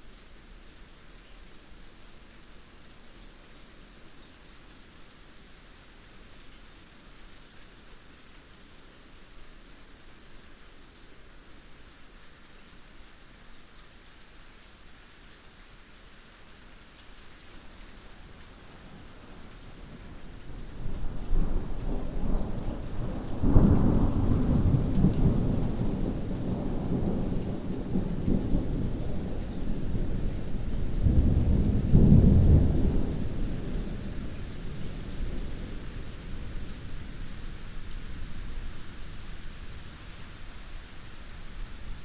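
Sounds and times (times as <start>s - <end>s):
rain hissing: 0.0s - 42.0s
thunder rolling: 20.9s - 36.4s.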